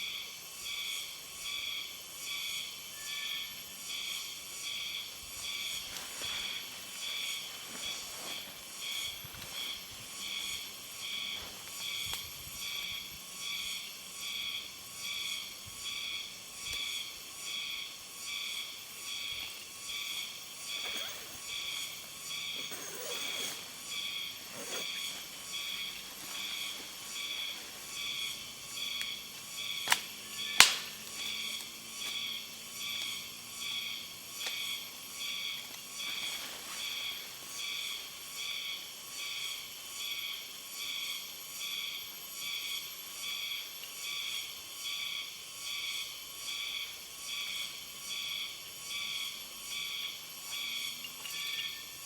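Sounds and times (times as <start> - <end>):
crickets chirping: 0.0 - 52.0.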